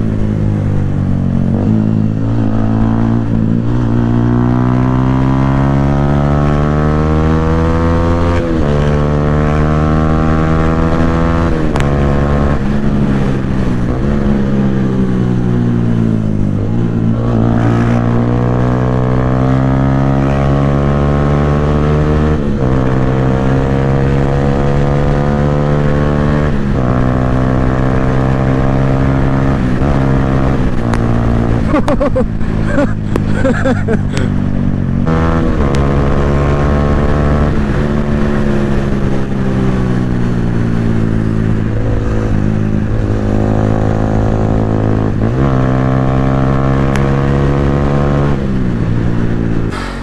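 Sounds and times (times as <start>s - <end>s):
motorcycle engine revving hard: 0.0s - 50.0s.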